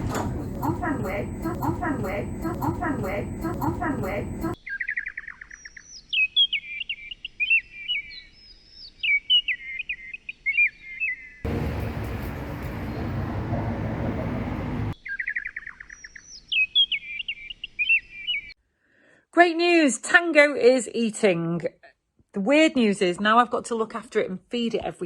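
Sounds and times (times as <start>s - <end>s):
loud rushing noise: 11.5s - 15.0s.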